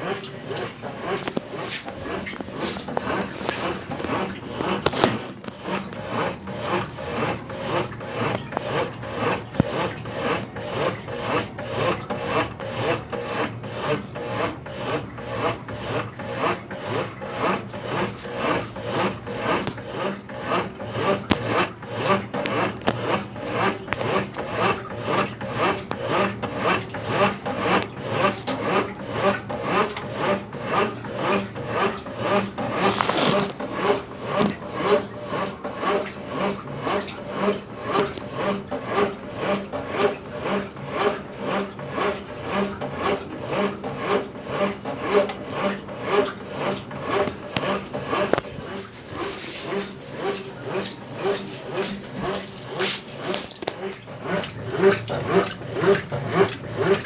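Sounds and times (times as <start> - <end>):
washing machine agitator swishing: 0.0 - 57.0.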